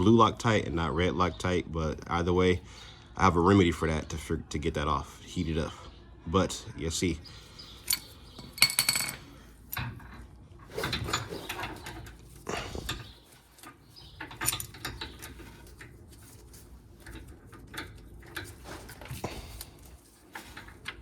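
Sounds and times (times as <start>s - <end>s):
metallic clinks of a tool: 7.8s - 9.9s.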